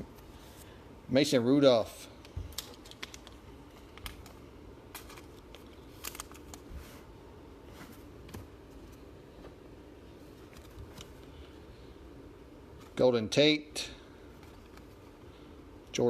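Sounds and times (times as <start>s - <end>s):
trading cards clicking and rustling: 2.2s - 6.7s.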